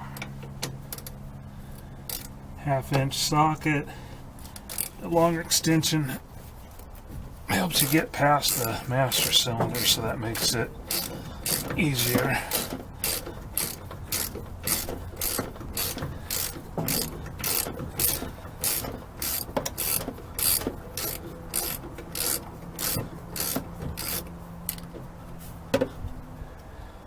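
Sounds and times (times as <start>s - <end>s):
socket ratchet clicking: 4.4s - 5.0s, 7.8s - 24.9s.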